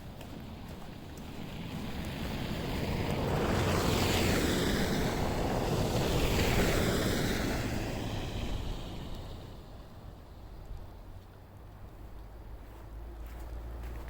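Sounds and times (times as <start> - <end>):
vehicle passing by: 1.0 - 10.2.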